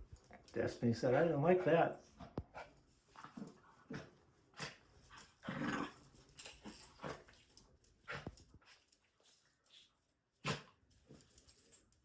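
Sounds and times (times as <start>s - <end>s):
dog sneezing and snorting: 3.9s - 4.8s, 10.4s - 10.8s.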